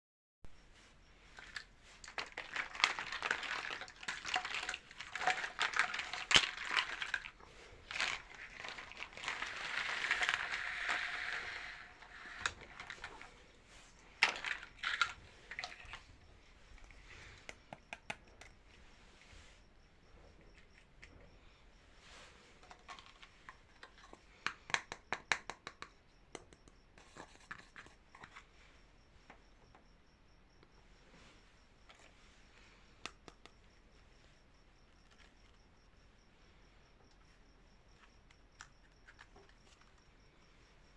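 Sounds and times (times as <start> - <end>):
packaging crinkling: 1.4 - 13.3.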